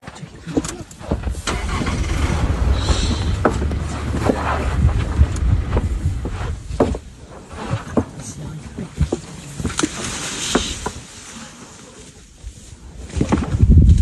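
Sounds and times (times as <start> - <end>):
knocks and clatter: 0.5 - 8.2
vehicle engine rumbling: 0.5 - 9.2.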